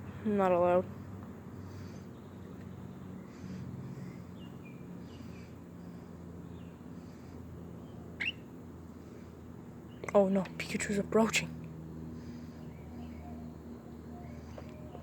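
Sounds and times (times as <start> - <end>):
steady low hum: 0.0 - 15.0
short bird chirps: 8.2 - 8.5.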